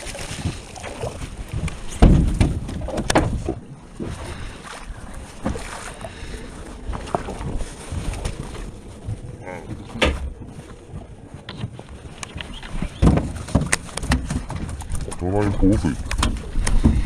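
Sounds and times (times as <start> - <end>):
knocks and clunks on boat: 0.0 - 17.0
heavy thump: 1.9 - 3.6.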